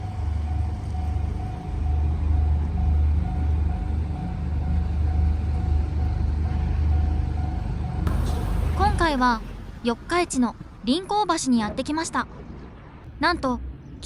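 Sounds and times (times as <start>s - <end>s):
heavy engine rumbling: 0.0s - 14.0s.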